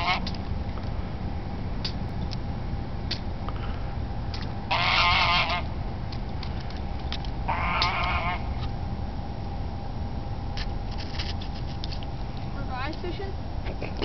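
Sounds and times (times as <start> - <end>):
goose calling: 0.0 - 0.3, 4.7 - 5.7, 7.5 - 8.7.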